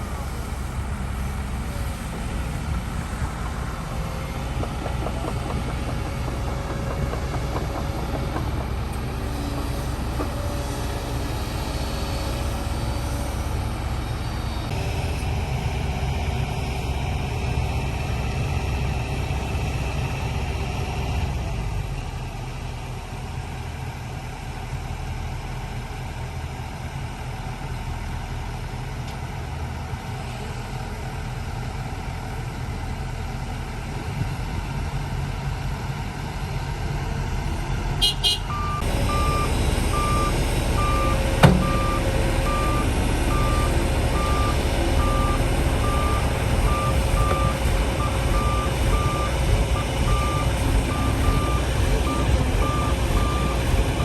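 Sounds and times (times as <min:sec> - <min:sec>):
diesel engine running: 0:00.0 - 0:54.0
reversing alarm beeping: 0:38.0 - 0:54.0.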